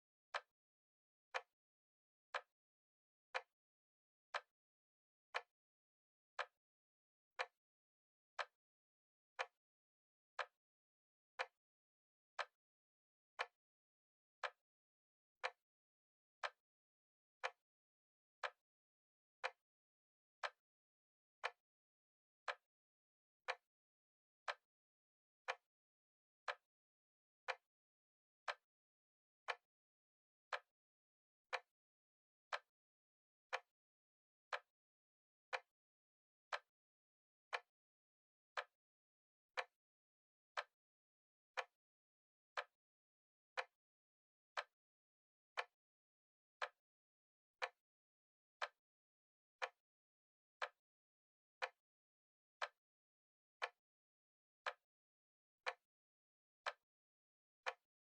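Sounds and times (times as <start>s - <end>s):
timer ticking: 29.4s - 29.6s.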